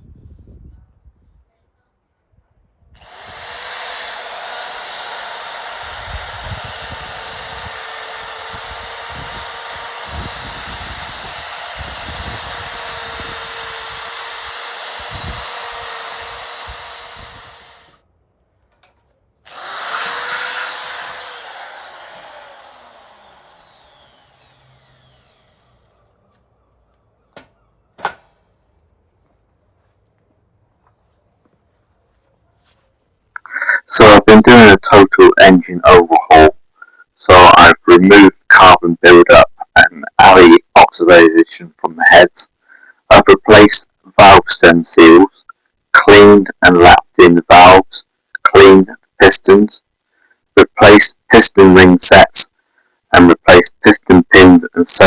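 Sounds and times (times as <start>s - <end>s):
power tool running: 3.0s - 18.0s, 19.5s - 26.0s.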